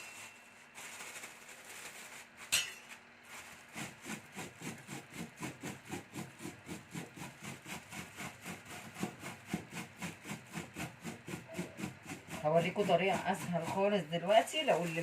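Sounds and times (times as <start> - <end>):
rocking blade chopping leaves: 0.0 - 15.0.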